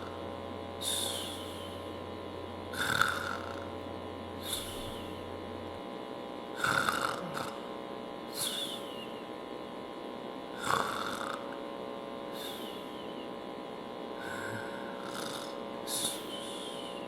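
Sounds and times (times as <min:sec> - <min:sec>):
man snoring: 0:00.0 - 0:01.9, 0:02.7 - 0:03.8, 0:04.4 - 0:05.2, 0:06.5 - 0:07.7, 0:08.3 - 0:09.1, 0:10.5 - 0:11.6, 0:12.3 - 0:13.0, 0:14.2 - 0:17.0
steady faint hum: 0:00.0 - 0:17.0.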